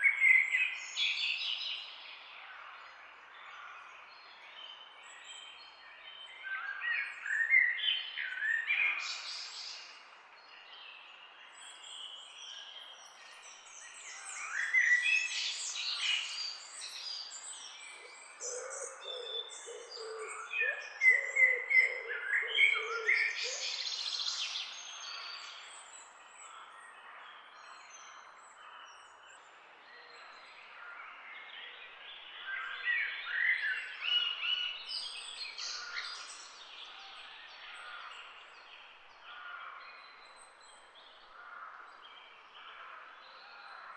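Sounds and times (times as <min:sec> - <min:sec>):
birds chirping and trilling: 0:10.7 - 0:43.9.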